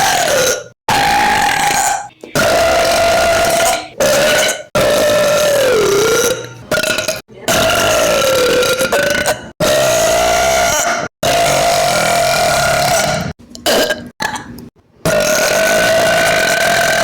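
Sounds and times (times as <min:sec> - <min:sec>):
boy burping: 0:00.0 - 0:10.6.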